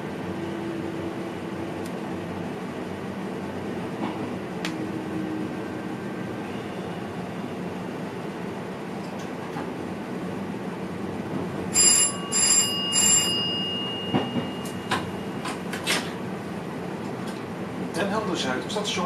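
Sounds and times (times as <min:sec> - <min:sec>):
train chime: 0:11.7 - 0:15.8.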